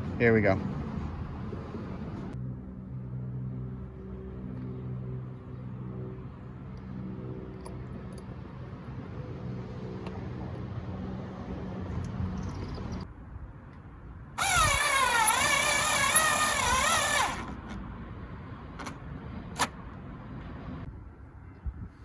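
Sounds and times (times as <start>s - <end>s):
cordless drill whining: 14.4s - 17.8s.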